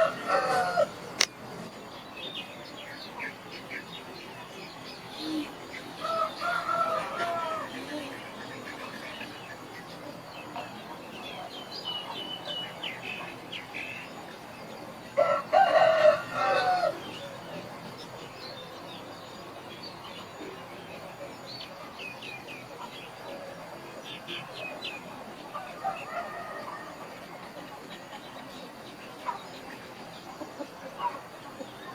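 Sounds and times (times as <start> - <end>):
rooster crowing: 0.0 - 1.0, 6.0 - 7.9, 15.2 - 17.2, 25.6 - 27.1.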